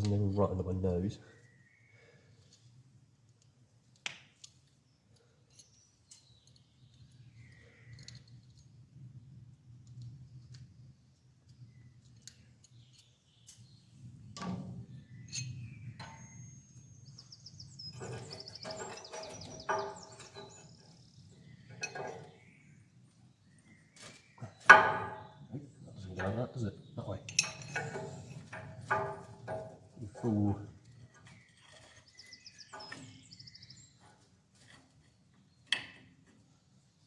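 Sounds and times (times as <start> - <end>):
metal clicks and knocks: 14.4 - 16.3, 17.9 - 21.0, 21.6 - 22.4, 24.6 - 25.4, 27.2 - 30.0.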